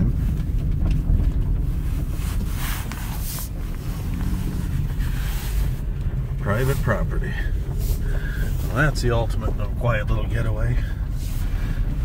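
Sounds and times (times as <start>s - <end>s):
car interior rumble: 0.0s - 12.0s.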